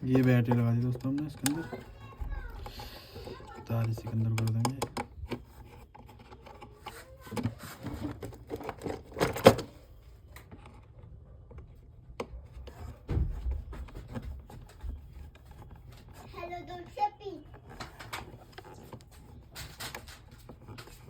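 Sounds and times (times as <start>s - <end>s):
handling clicks and rubbing: 0.0s - 21.0s
dull thumps: 12.7s - 15.4s.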